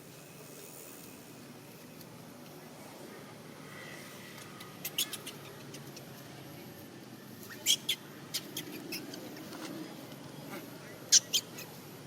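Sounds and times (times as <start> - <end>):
baby monkey squeaking: 4.8 - 6.0, 7.5 - 9.2, 11.1 - 11.8.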